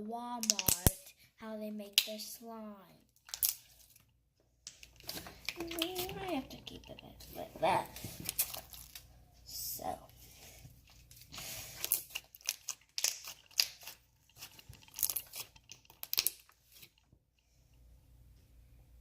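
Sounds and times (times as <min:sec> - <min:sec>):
slime crackling and ripping: 0:08.1 - 0:09.1, 0:11.3 - 0:17.0.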